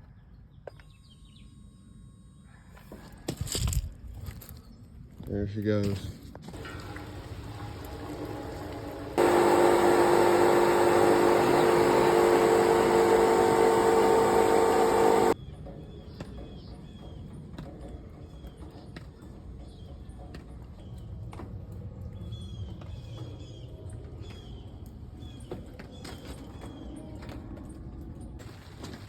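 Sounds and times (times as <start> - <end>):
air conditioner compressor humming: 6.6 - 15.4.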